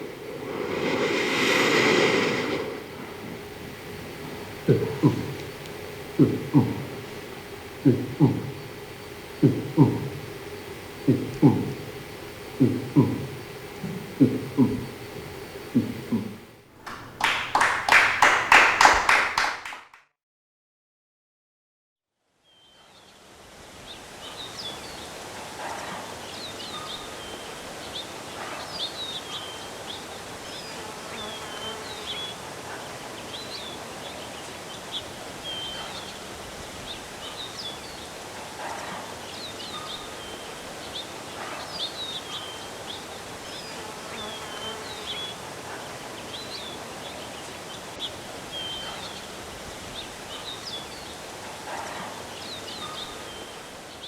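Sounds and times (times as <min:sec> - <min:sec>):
small birds chirping: 0:00.0 - 0:16.4, 0:33.2 - 0:54.0
background hiss: 0:00.0 - 0:19.8, 0:22.5 - 0:54.0.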